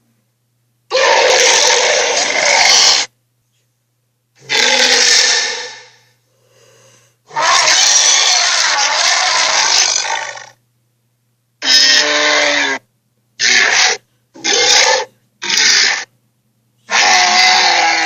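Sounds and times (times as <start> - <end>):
creature raspy roars and growls: 0.9 - 3.1, 4.4 - 5.9, 7.3 - 10.6, 13.4 - 16.1, 16.9 - 18.0.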